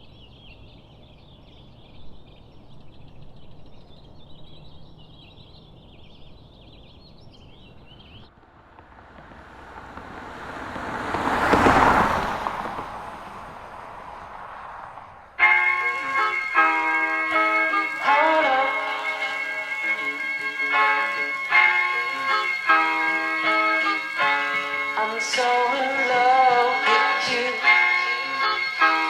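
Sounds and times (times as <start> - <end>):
birds chirping: 0.0 - 29.0
rushing noise: 8.3 - 18.1.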